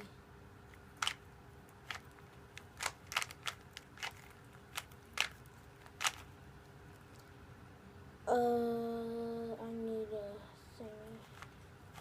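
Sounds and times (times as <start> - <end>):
plastic puzzle cube clicking: 1.0 - 1.2, 1.8 - 6.3.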